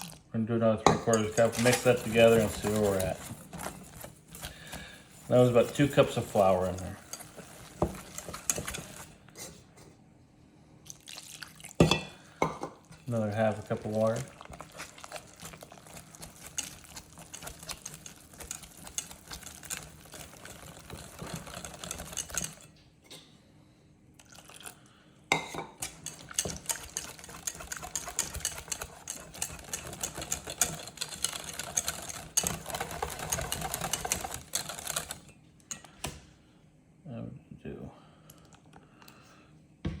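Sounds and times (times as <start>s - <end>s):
batter stirred fast in bowl: 0.0s - 0.2s, 0.8s - 9.5s, 13.0s - 22.7s, 25.8s - 35.3s.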